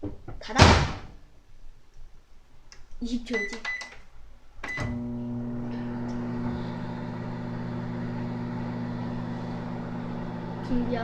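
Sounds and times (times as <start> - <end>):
microwave humming: 4.6 - 11.0
microwave beep: 4.7 - 5.2.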